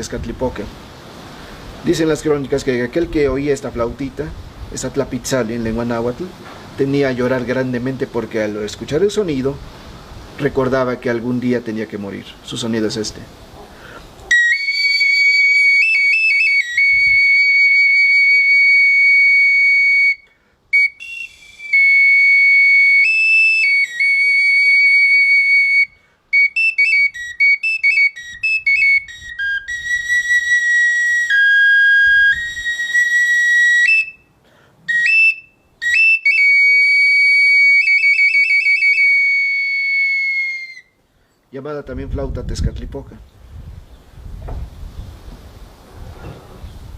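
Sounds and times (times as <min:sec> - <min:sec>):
high whistle-like flute: 0:14.3 - 0:41.0.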